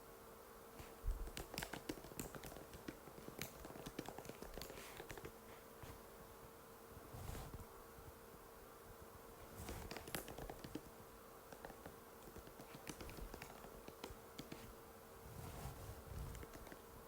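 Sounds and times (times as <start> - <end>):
faint steady hum: 0.0 - 17.0
laptop keyboard typing: 1.3 - 5.4, 9.7 - 10.9, 11.5 - 14.7, 16.3 - 16.8.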